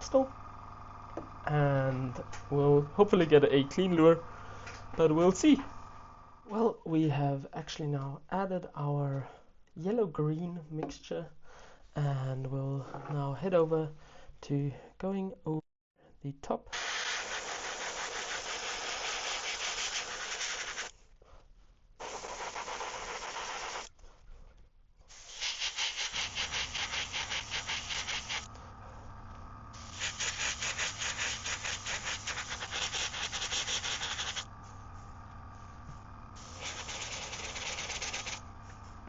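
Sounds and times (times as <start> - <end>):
compressor low hum: 0.0 - 7.0, 25.9 - 39.0
airbrush spraying hiss: 16.8 - 20.9, 22.0 - 23.9, 25.1 - 29.1, 29.7 - 39.0.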